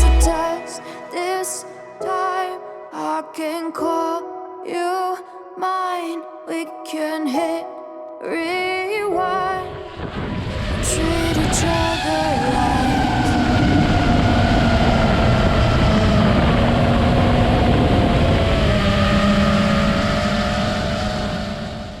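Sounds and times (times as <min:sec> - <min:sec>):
rush of wind: 0:09.7 - 0:22.0.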